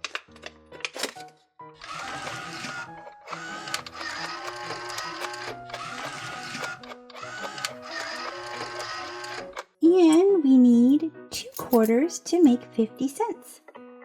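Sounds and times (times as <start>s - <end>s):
background music: 0.0s - 14.0s
bill slot motor whirring: 1.8s - 9.6s.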